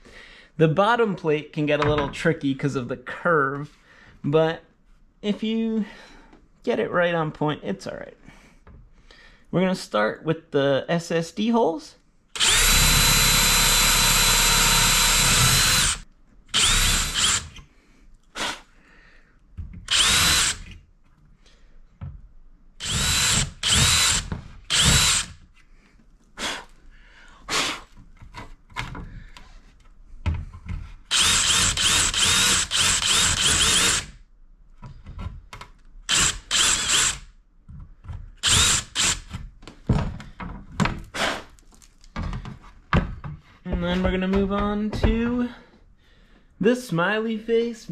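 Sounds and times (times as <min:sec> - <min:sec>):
power drill boring into plastic: 0:12.4 - 0:17.6, 0:19.9 - 0:20.8, 0:22.8 - 0:25.4, 0:31.1 - 0:34.2, 0:36.1 - 0:37.3, 0:38.4 - 0:39.3.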